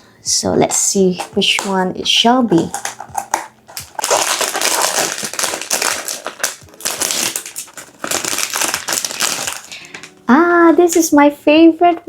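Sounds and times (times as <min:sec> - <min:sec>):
packaging crinkling and tearing: 0:02.6 - 0:10.2.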